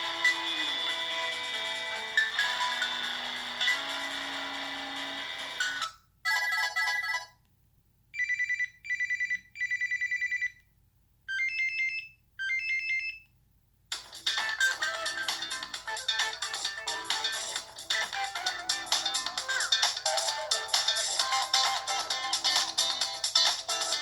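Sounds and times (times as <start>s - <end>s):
musical phone ringtone: 0.0s - 7.3s, 14.2s - 24.0s.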